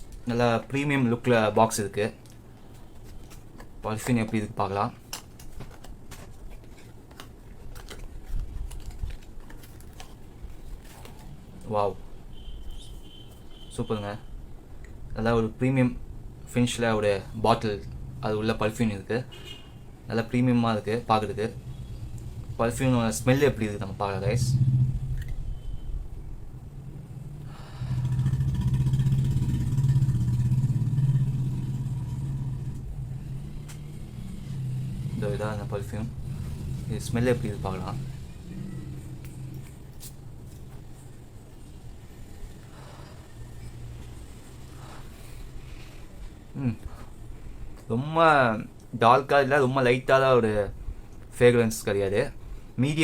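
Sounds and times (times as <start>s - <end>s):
motor vehicle engine running: 27.1s - 40.0s.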